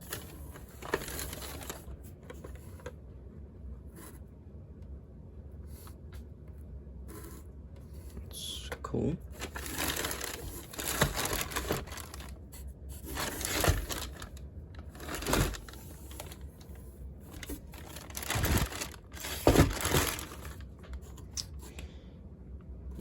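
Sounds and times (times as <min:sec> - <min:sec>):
packaging crinkling and tearing: 0:00.1 - 0:02.0, 0:09.3 - 0:21.5.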